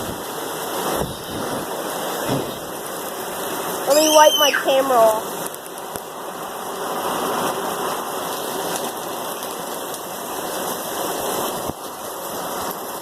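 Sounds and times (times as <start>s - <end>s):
heavy rain pouring: 0.0s - 13.0s.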